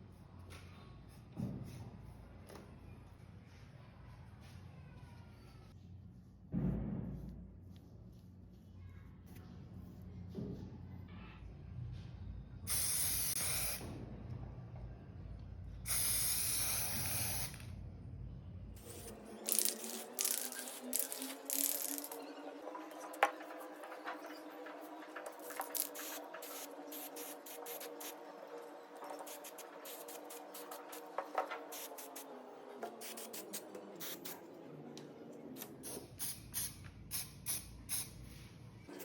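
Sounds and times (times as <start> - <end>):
spray can hissing: 12.7 - 13.8, 15.9 - 17.6, 18.8 - 22.2, 25.3 - 28.2, 29.0 - 32.3, 32.9 - 34.4, 35.6 - 38.2.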